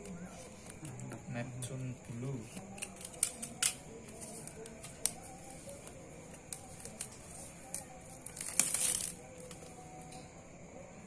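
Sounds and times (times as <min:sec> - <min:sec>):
box packaging clicks and crinkles: 0:02.5 - 0:09.8
packaging tearing: 0:06.8 - 0:09.6.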